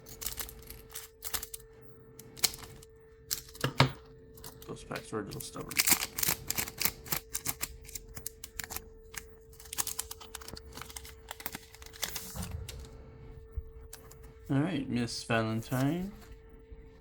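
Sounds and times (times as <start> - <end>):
foil wrappers crinkling: 0.0 - 1.7, 4.4 - 12.5
cards rustling and clicking: 0.0 - 12.9.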